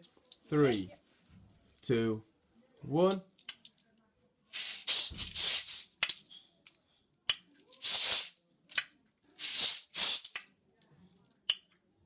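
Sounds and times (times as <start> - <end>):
hissing noises: 4.5 - 6.0, 7.7 - 8.4, 9.4 - 10.4.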